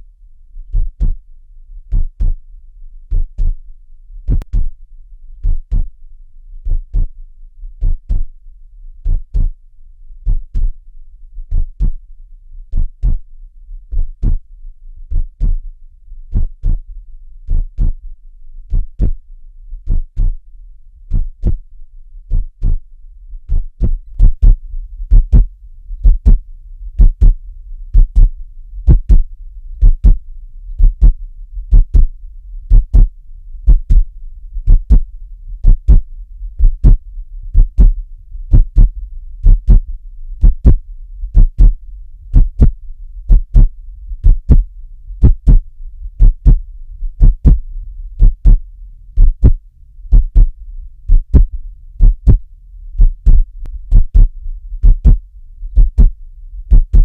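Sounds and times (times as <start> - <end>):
heartbeat thumps: 0.7 - 1.3, 1.9 - 2.4, 3.0 - 3.6, 4.3 - 4.8, 5.4 - 6.0, 6.6 - 7.2, 7.8 - 8.4, 9.0 - 9.6, 10.2 - 10.8, 11.4 - 12.0, 12.7 - 13.3, 13.9 - 14.5, 15.1 - 15.6, 16.3 - 16.9, 17.5 - 18.0, 18.7 - 20.5, 21.1 - 21.7, 22.3 - 57.0.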